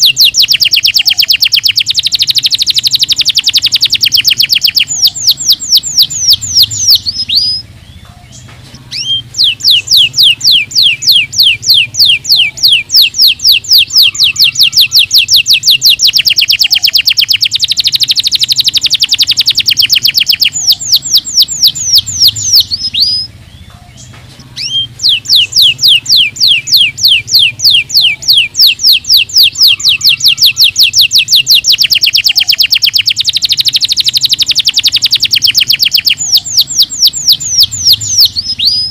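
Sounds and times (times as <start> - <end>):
canary singing trills: 0.0 - 38.9.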